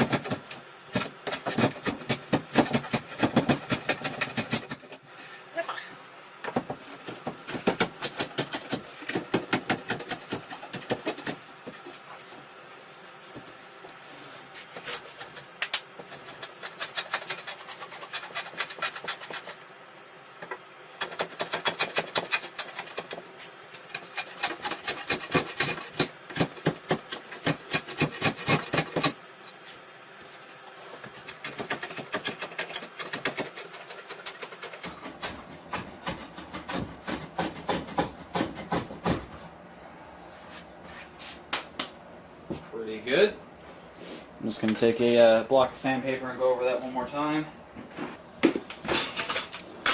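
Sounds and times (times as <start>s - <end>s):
hand plane rasping on wood: 16.1s - 19.6s, 21.0s - 23.2s, 23.9s - 26.5s.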